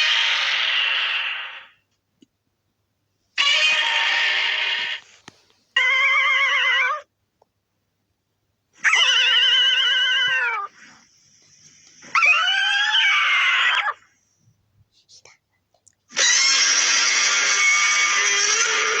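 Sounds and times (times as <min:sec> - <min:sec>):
monster roar: 0:00.0 - 0:01.6, 0:16.2 - 0:19.0.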